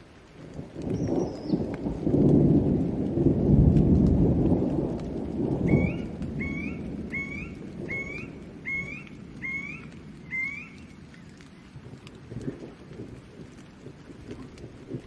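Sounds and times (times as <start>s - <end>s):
low thunder rumble: 0.0s - 15.0s
rain: 0.0s - 15.0s
bird whistling call: 5.7s - 11.0s.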